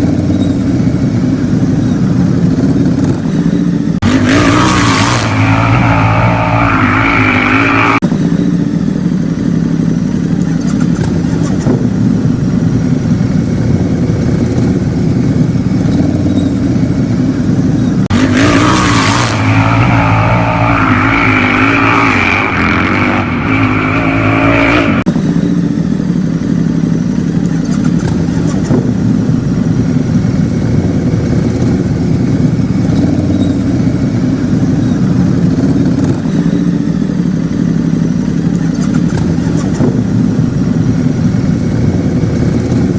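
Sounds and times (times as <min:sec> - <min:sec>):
wavering whine: 0:04.0 - 0:09.0, 0:18.1 - 0:26.1.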